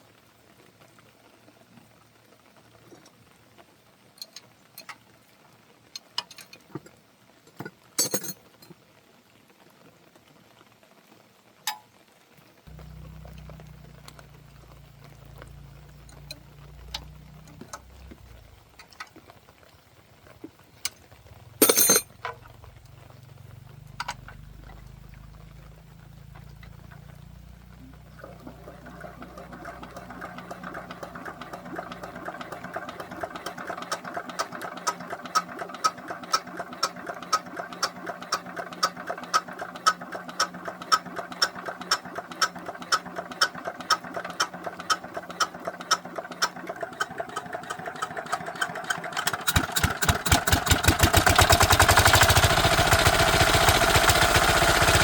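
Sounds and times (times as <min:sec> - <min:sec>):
tractor engine running: 0:12.7 - 0:19.2, 0:20.4 - 0:55.0
tools clicking on engine: 0:28.2 - 0:55.0.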